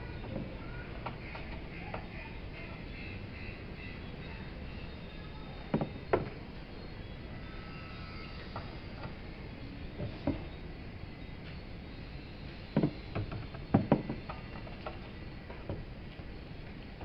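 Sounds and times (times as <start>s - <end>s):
tools and parts knocking: 12.8s - 15.8s.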